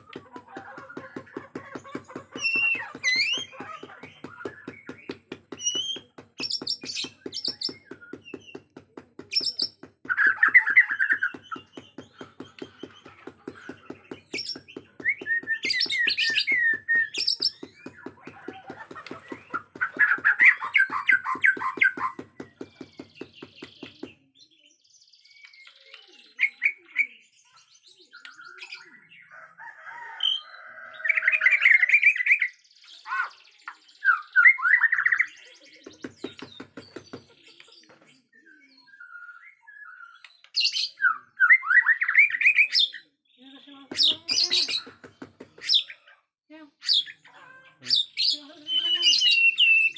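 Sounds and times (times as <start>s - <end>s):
bird singing whistled phrases: 34.0s - 35.5s, 38.7s - 43.0s, 47.9s - 49.9s.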